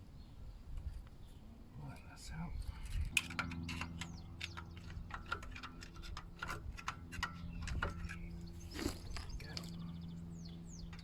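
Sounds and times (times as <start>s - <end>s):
steady low hum: 0.0s - 11.0s
small metallic clicks and taps: 2.8s - 8.3s.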